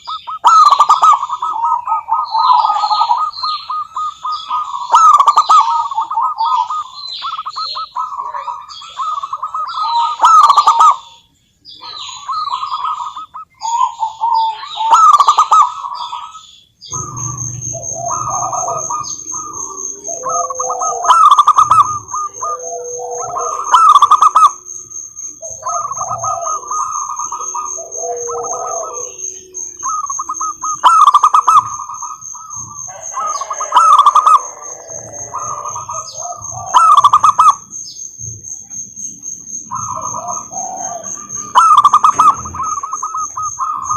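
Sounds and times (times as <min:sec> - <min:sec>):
doves cooing in trills: 0:00.0 - 0:43.9
high bird twittering: 0:00.0 - 0:43.9
steady high whine: 0:16.9 - 0:33.2.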